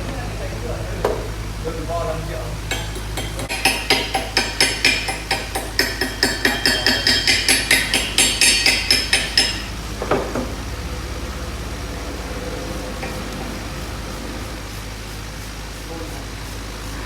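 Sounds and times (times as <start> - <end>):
hammer tapping on steel: 2.7 - 10.5
metal clank: 2.7 - 10.6.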